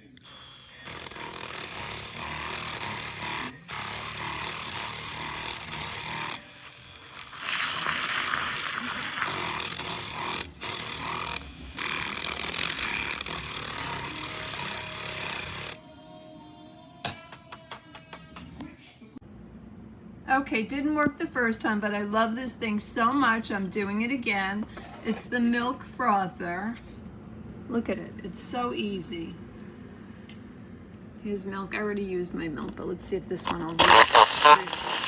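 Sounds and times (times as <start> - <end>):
milk frother motor whirring: 0.0 - 18.6, 33.4 - 35.0.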